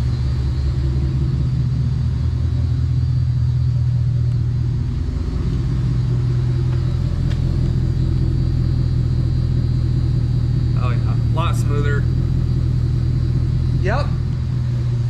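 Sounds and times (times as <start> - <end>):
engine idling with exhaust rumble: 0.0 - 15.0.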